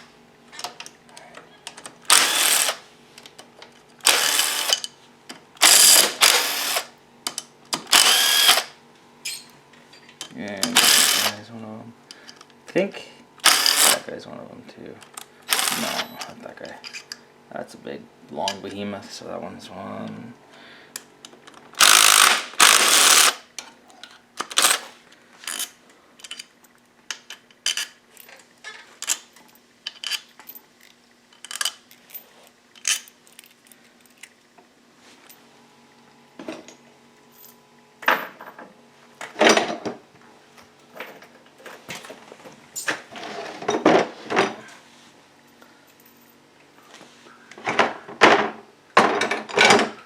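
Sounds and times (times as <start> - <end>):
tools and bolts clinking: 21.4 - 34.4.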